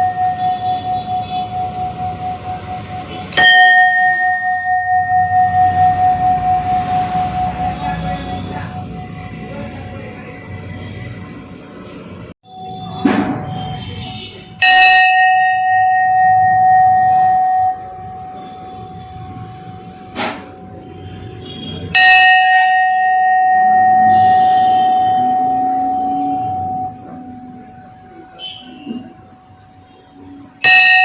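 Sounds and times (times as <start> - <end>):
metal bell ringing: 0.0 - 9.6, 14.6 - 27.5, 30.6 - 31.0.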